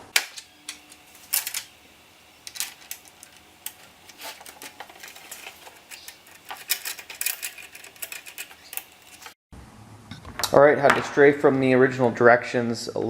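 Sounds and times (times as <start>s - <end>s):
small hardware clicking and rattling: 2.4s - 9.4s.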